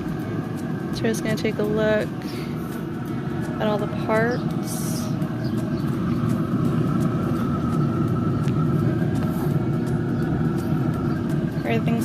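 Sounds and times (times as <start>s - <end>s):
faint steady whine: 0.0s - 12.0s
grill fan low rumble: 0.0s - 12.0s.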